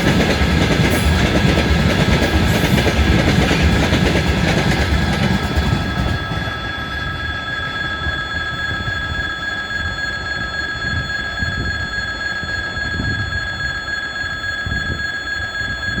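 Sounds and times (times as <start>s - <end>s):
rail clatter: 0.0s - 7.0s
freight train rumbling: 0.0s - 13.7s.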